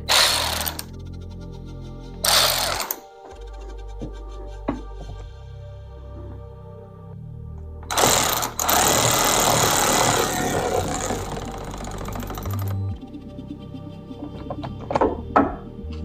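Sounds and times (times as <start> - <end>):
hand ratchet clicking: 0.0 - 0.9, 2.2 - 3.0, 7.9 - 12.8.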